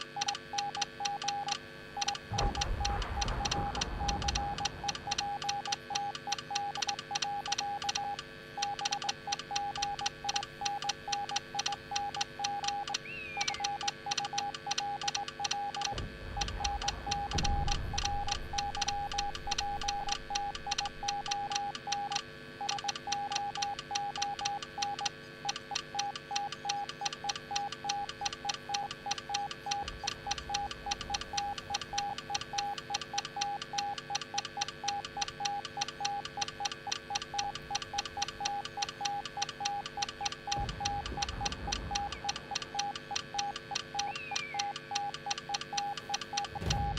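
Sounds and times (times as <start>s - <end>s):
keying clicks: 0.0s - 46.9s
morse code beeps: 0.0s - 46.9s
low rumble: 2.2s - 6.0s, 15.9s - 21.4s, 40.5s - 42.8s.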